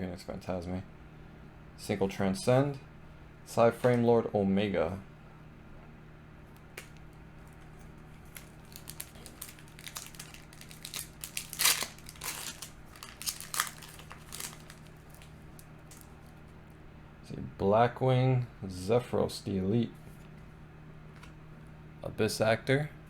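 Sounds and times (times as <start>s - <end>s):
foil wrapper crinkling: 6.9s - 16.5s.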